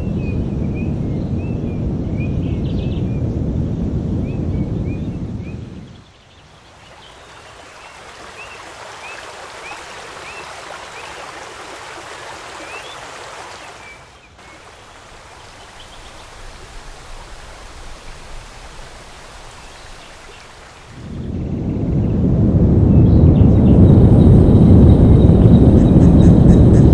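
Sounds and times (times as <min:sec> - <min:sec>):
flowing water rushing: 0:06.4 - 0:21.4
bird chirping: 0:12.7 - 0:21.3
low rumble: 0:21.2 - 0:26.8.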